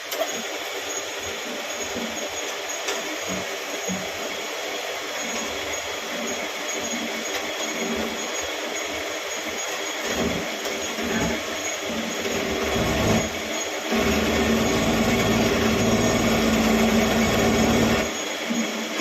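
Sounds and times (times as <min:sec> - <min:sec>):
workshop machinery running: 0:00.0 - 0:19.0
electric motor humming: 0:11.0 - 0:18.2.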